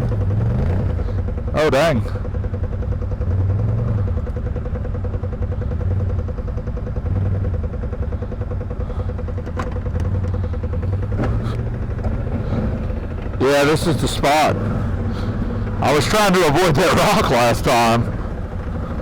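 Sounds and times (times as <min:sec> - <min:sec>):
quad engine running at low speed: 0:00.0 - 0:19.0
sharp clicks and knocks: 0:09.4 - 0:10.4.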